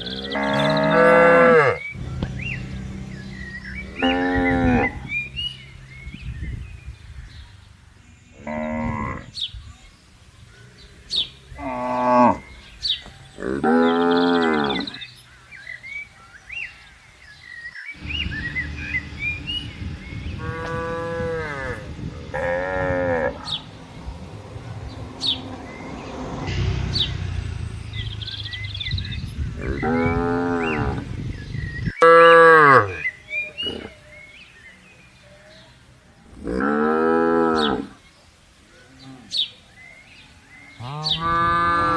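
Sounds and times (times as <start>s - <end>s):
cows mooing: 0.0s - 5.9s, 11.6s - 12.5s, 13.4s - 15.0s, 18.0s - 26.6s, 29.6s - 31.2s, 32.0s - 33.9s, 36.3s - 38.0s, 40.8s - 41.9s
low steady rumble: 1.8s - 7.9s, 18.0s - 32.0s.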